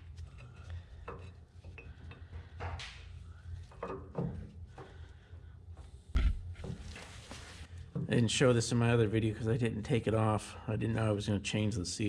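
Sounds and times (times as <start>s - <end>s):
low hum: 6.2s - 6.8s.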